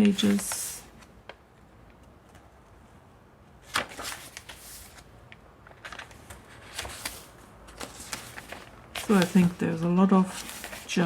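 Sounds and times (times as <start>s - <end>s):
paper pages rustling: 0.0s - 1.4s, 3.6s - 11.0s.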